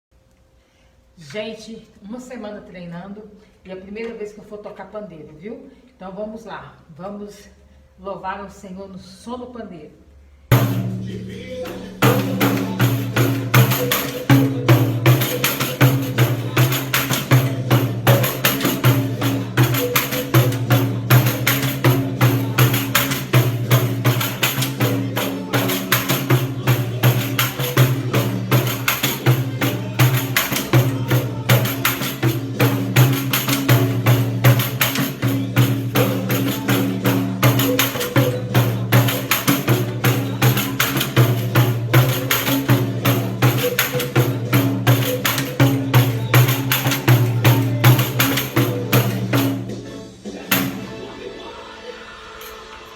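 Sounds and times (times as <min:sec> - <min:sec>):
low accompanying music: 0:10.5 - 0:52.9
pandeiro jingles ringing: 0:10.7 - 0:49.4.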